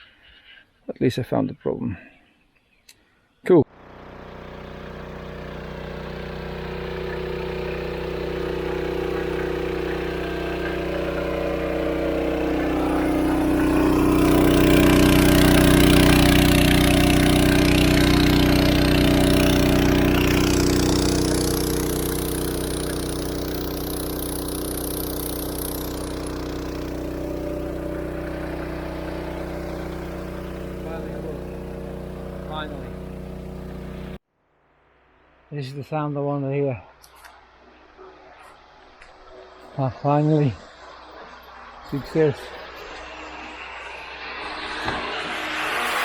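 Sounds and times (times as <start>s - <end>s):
small petrol engine pump running: 3.7s - 34.2s, 40.6s - 46.0s.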